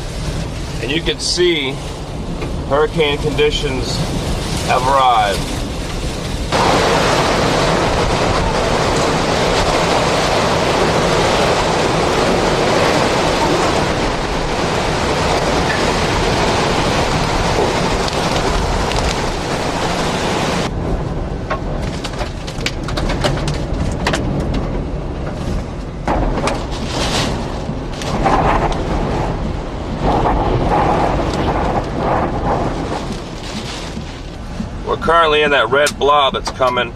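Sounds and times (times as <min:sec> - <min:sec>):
driving rain: 0:00.0 - 0:36.9
strong wind: 0:00.0 - 0:36.9.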